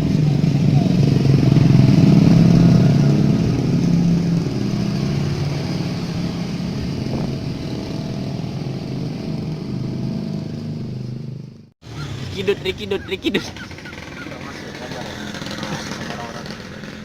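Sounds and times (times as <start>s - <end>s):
small engine running: 11.9s - 17.0s.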